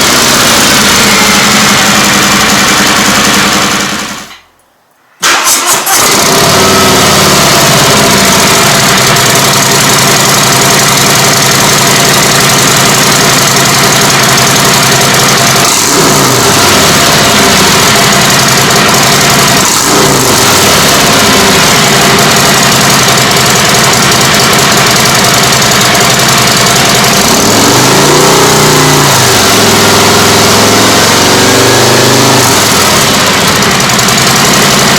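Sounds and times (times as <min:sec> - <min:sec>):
motorcycle engine idling and revving: 0:00.0 - 0:04.4, 0:05.4 - 0:34.9.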